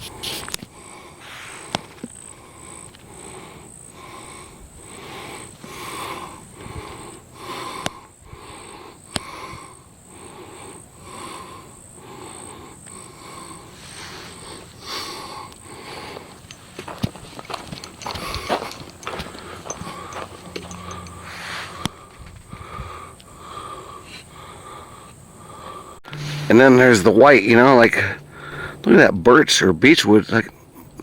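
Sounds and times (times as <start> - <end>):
high pulsing insect call: 0.0 - 30.8
footsteps crunching on dry litter: 16.0 - 22.4.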